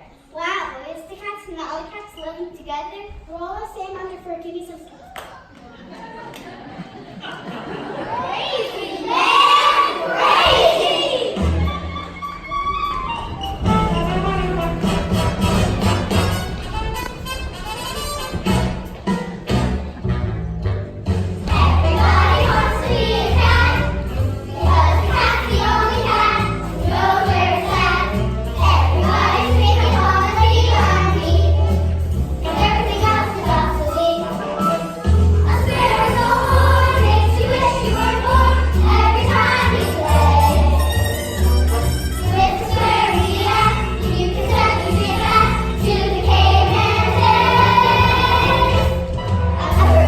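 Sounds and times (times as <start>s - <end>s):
children singing: 7.9s - 14.4s, 21.5s - 41.2s, 42.2s - 50.0s
instrumental accompaniment: 10.2s - 50.0s.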